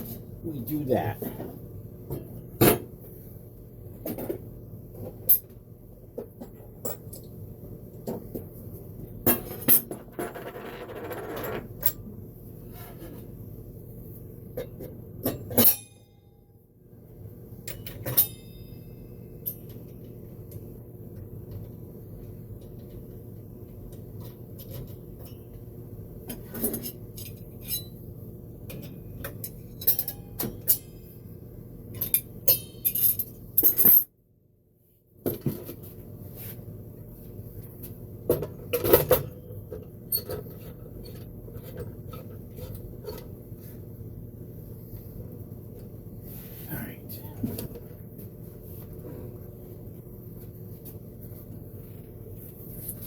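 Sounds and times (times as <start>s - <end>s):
steady low hum: 11.7s - 53.0s.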